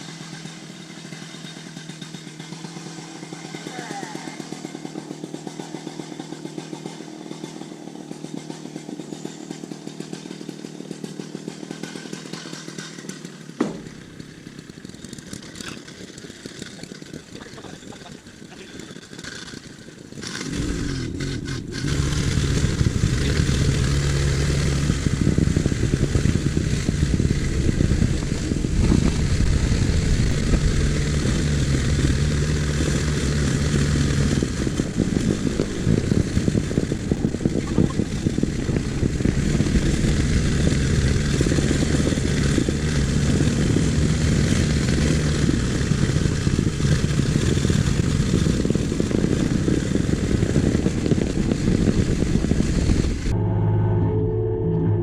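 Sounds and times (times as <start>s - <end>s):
excavator diesel engine: 0.0s - 55.0s
sharp knock: 13.6s - 14.0s.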